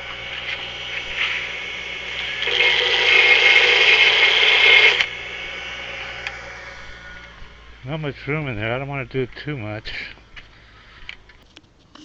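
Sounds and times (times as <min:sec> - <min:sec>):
power grinder grinding metal: 0:00.0 - 0:07.8.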